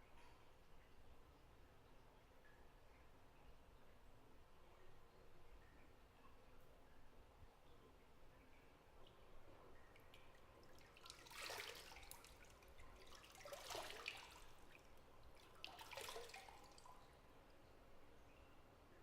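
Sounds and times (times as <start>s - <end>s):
bathwater splashing and dripping: 9.8s - 17.2s.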